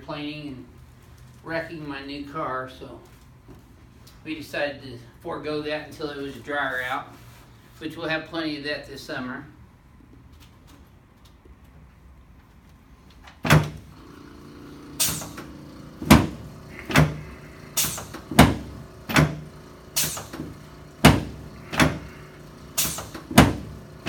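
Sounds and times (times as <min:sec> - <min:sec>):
table thumping: 0:16.0 - 0:19.4, 0:20.0 - 0:22.1, 0:22.9 - 0:23.7.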